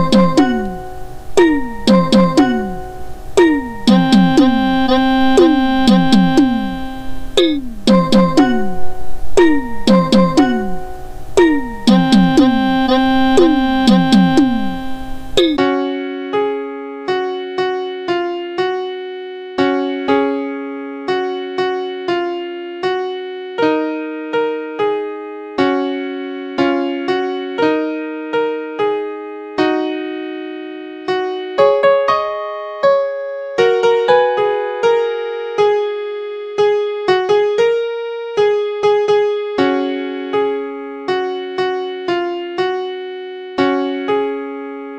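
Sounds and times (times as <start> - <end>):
synth notes dropping in pitch: 0.0 - 15.6
electric piano melody: 0.0 - 44.9.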